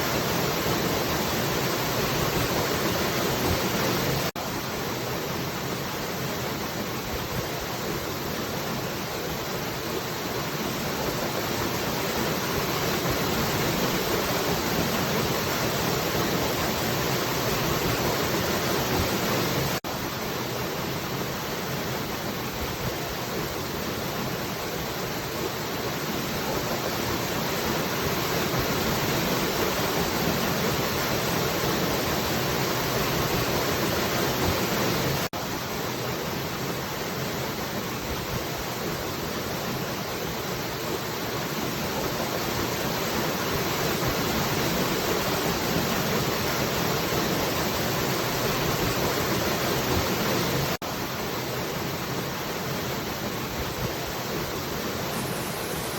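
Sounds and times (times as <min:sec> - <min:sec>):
falling water rushing: 0:00.0 - 0:55.9.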